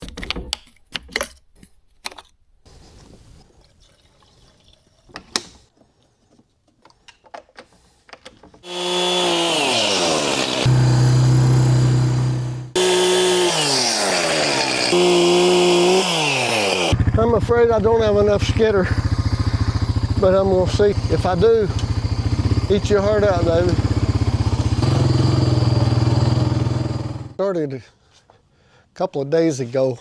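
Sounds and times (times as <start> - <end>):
small gasoline engine running: 8.7 - 27.4.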